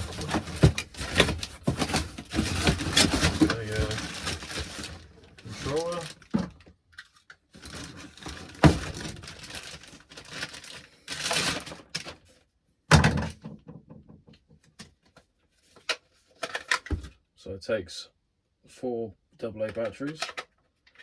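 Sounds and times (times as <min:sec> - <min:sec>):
bag rustling: 0:00.0 - 0:06.3.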